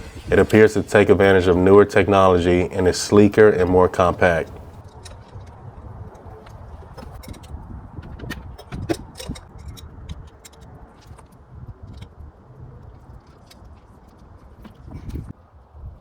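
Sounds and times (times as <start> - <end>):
low steady rumble: 0.0 - 4.8.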